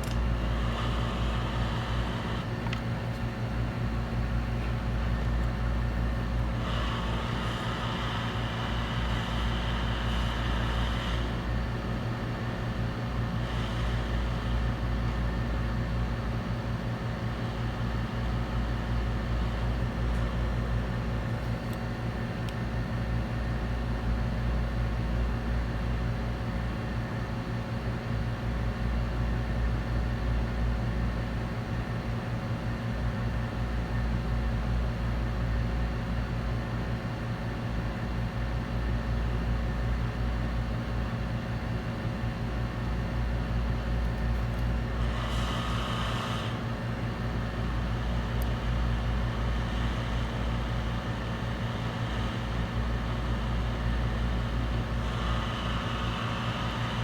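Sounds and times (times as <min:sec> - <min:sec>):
low machine hum: 0:00.0 - 0:26.4, 0:33.4 - 0:57.0
higher hiss: 0:48.0 - 0:57.0.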